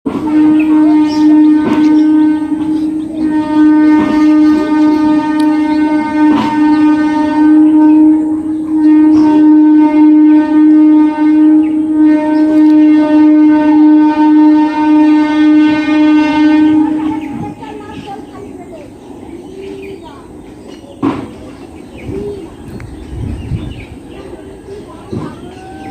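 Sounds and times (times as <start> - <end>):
train horn blast: 0.1 - 20.4.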